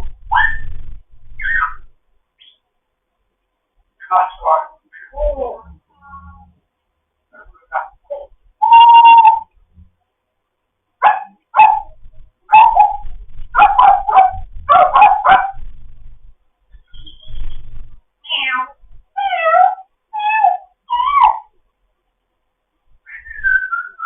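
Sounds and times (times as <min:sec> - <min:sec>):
parrot calling and whistling: 0:01.4 - 0:01.8, 0:08.6 - 0:09.5, 0:23.0 - 0:24.0.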